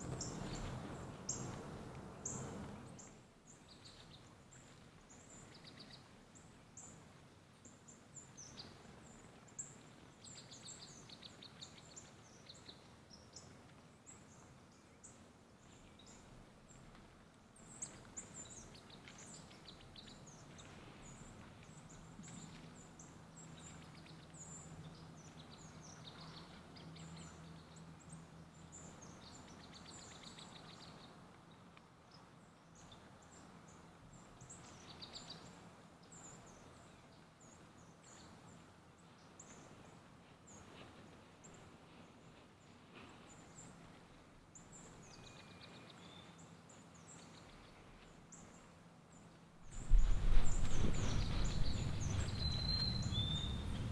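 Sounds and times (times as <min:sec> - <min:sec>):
small birds chirping: 0:00.0 - 0:16.9, 0:17.6 - 0:39.9, 0:42.2 - 0:53.9
faint low steady hum: 0:00.0 - 0:53.9
bird trill: 0:49.8 - 0:53.9.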